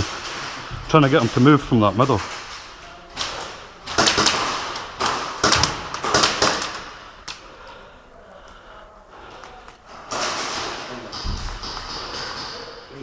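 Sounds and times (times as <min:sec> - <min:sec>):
airsoft rifle firing bursts: 0:03.8 - 0:07.0.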